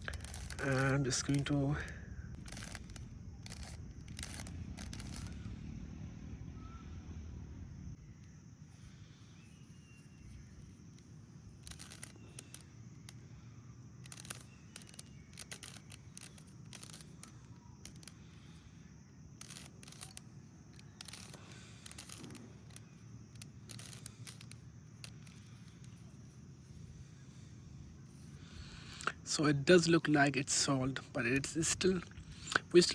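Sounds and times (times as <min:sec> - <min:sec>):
plastic puzzle cube clicking: 0:00.0 - 0:01.6, 0:02.4 - 0:05.4, 0:10.2 - 0:13.2, 0:14.0 - 0:18.6, 0:19.3 - 0:26.3
low background rumble: 0:00.0 - 0:32.9.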